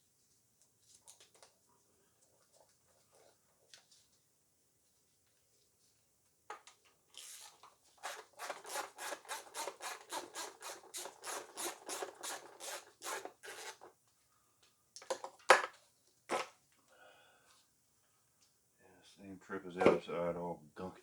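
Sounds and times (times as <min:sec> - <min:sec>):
hand tool rasping: 0:08.0 - 0:13.9.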